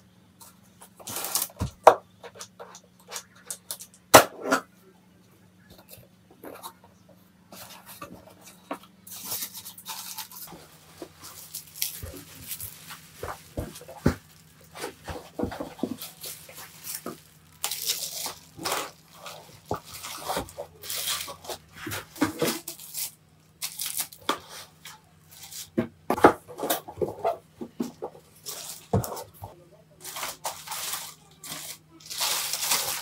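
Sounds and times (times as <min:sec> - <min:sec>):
packaging rustling and tearing: 0:01.0 - 0:01.6, 0:09.1 - 0:24.6, 0:30.0 - 0:33.0.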